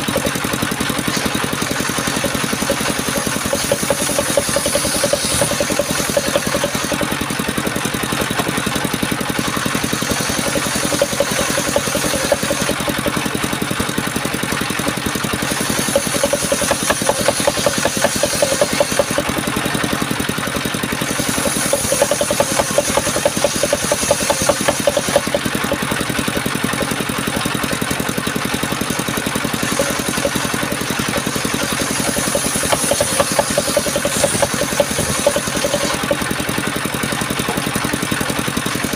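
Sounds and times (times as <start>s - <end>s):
sawmill engine running: 0.0s - 38.9s
high hiss of saw: 1.9s - 7.2s, 9.8s - 13.0s, 15.4s - 19.4s, 21.0s - 25.4s, 29.6s - 36.2s.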